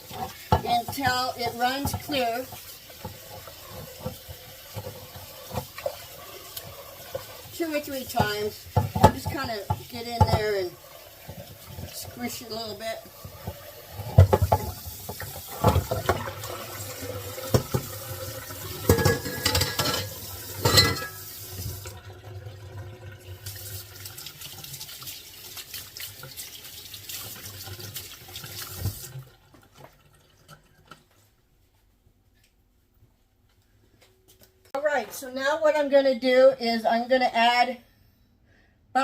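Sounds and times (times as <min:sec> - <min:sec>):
tap water running into sink: 0:00.0 - 0:31.2.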